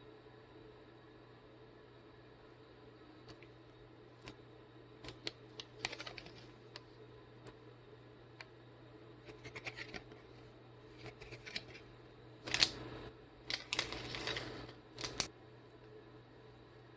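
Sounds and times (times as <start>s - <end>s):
packaging clicks and taps: 12.5s - 12.8s, 13.5s - 15.3s
scratchy rustles: 13.6s - 15.3s.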